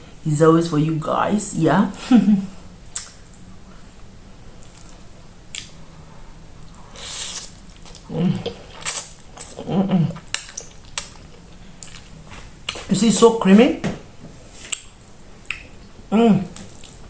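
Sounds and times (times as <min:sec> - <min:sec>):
mouth clicks and wet eating: 0:02.9 - 0:03.4, 0:05.5 - 0:05.8, 0:07.1 - 0:12.1, 0:14.7 - 0:15.8
slurping spaghetti: 0:06.9 - 0:09.6
person humming mm: 0:08.0 - 0:08.8, 0:16.1 - 0:16.7.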